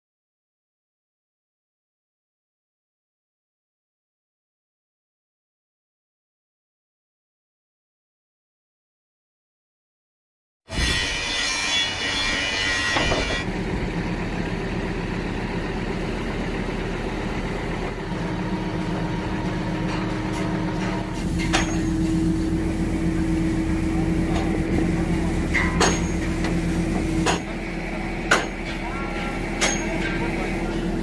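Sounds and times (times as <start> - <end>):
truck engine idling: 13.4 - 31.0.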